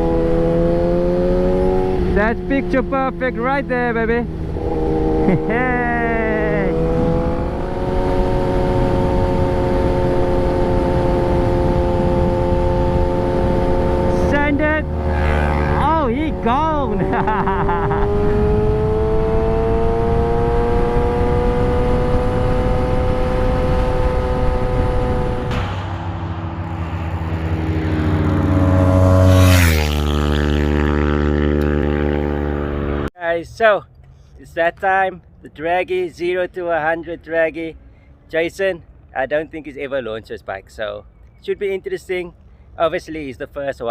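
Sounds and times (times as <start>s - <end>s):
heavy wind: 0.0s - 33.1s
motorcycle engine cruising: 0.0s - 33.1s
road rumble: 0.0s - 40.2s.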